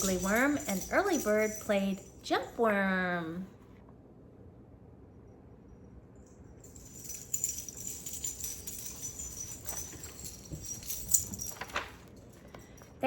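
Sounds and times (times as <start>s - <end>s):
small metal pieces jingling: 0.0s - 2.2s, 6.6s - 13.0s.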